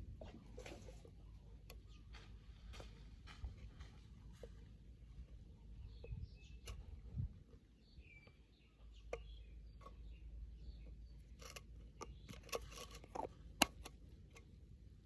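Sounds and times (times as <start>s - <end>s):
faint bird chirps: 0.2s - 2.7s, 4.1s - 12.9s.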